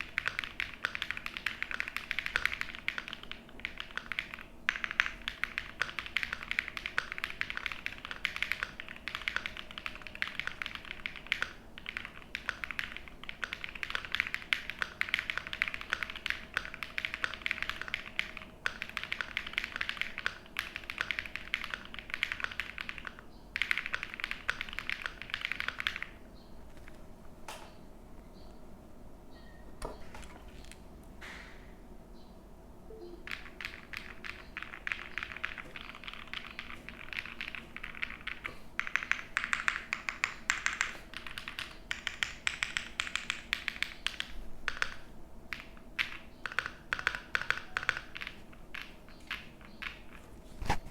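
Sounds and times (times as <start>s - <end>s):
mechanical keyboard typing: 0.0s - 26.2s, 33.0s - 50.2s.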